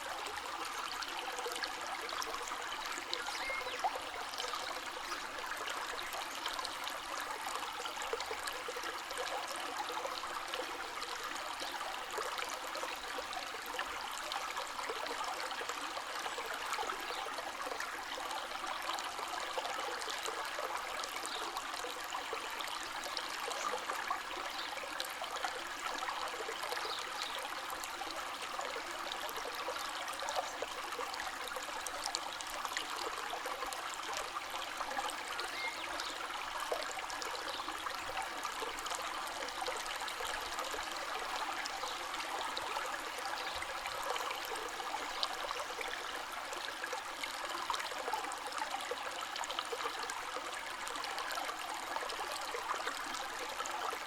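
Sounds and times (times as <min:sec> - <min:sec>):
small splashes and trickles: 0:00.0 - 0:54.0
stream flowing: 0:00.0 - 0:54.0.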